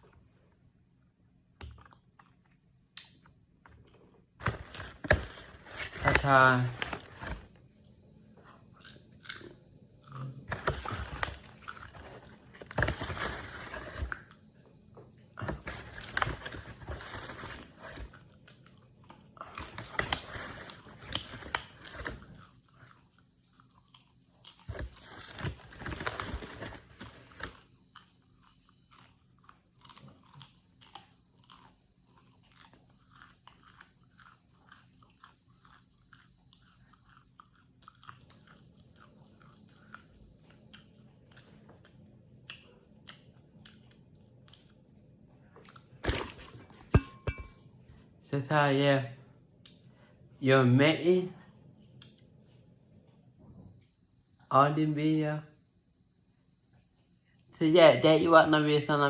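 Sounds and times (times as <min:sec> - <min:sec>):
popcorn crunching while chewed: 0:01.5 - 0:46.8.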